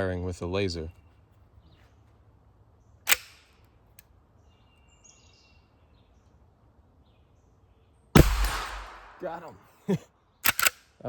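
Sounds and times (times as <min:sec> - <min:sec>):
faint bird chirp: 0:00.8 - 0:03.0, 0:04.3 - 0:08.1
air pistol shot: 0:08.2 - 0:09.4.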